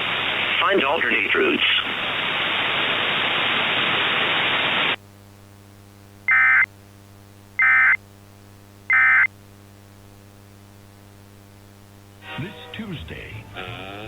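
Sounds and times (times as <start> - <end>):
static hiss: 0.0 - 14.0
low steady hum: 9.5 - 14.0.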